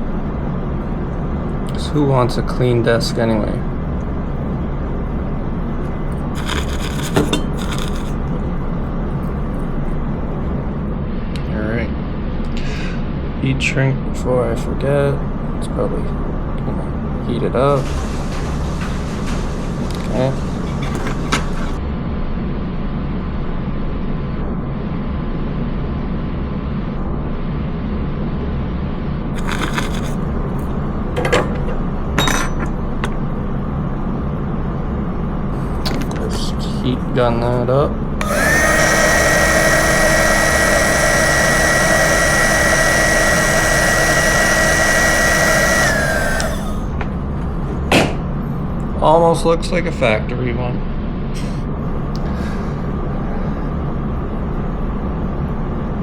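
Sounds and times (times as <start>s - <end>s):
small parts clinking on desk: 31.2s - 33.2s.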